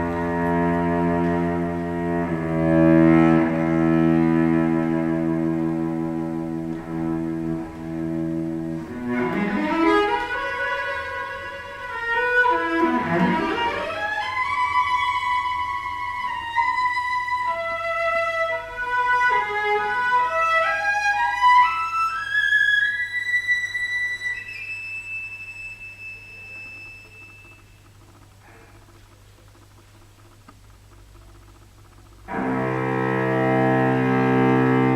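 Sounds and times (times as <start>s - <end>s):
bowed cello: 0.0s - 24.7s, 32.3s - 34.9s.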